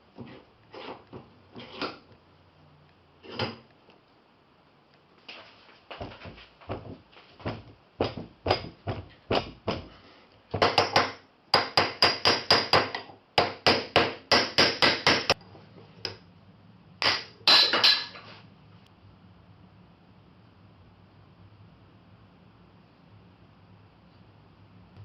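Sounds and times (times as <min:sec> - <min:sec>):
hammer striking: 0:10.6 - 0:15.4.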